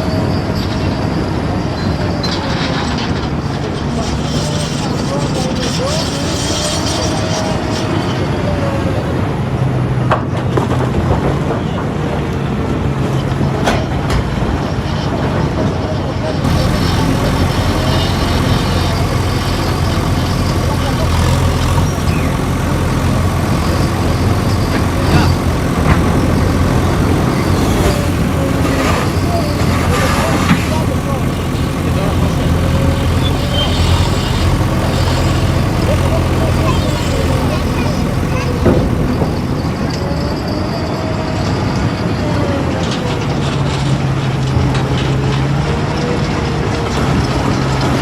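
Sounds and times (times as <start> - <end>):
diesel engine running: 0.0 - 48.0.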